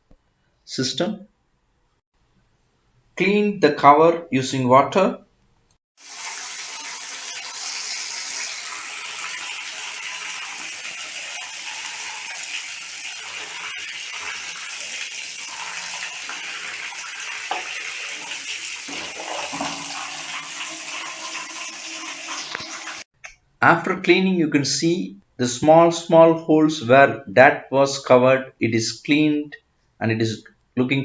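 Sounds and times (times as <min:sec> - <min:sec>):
tap water splashing on plastic: 0:06.0 - 0:23.1.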